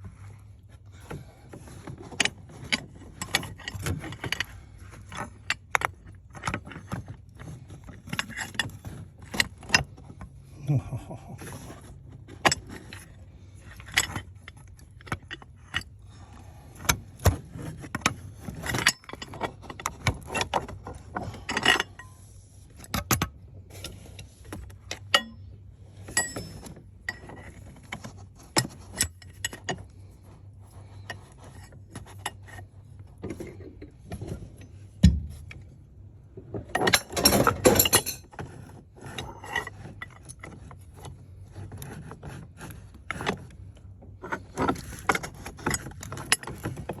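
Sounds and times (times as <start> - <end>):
tools rattling: 22.8 - 35.7, 36.4 - 40.7
metal tools clinking: 26.0 - 27.6, 36.7 - 38.3.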